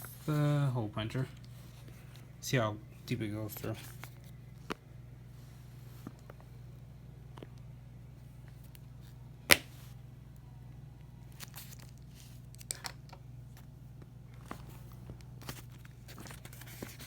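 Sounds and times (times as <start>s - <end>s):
hole puncher snap: 9.5s - 9.8s
paper rustling: 11.3s - 12.8s, 14.4s - 17.0s.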